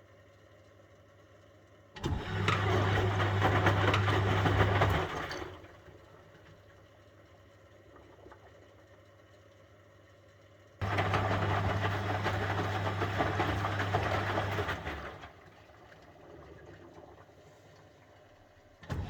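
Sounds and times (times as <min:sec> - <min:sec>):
washing machine drum motor humming: 0:02.0 - 0:06.0, 0:10.8 - 0:17.2.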